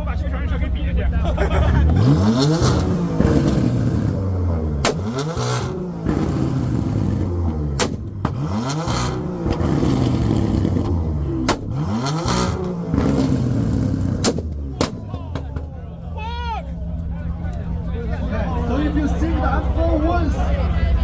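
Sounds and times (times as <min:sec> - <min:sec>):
car engine revving: 0:00.0 - 0:21.0
exhaust cracks and pops: 0:04.8 - 0:15.9.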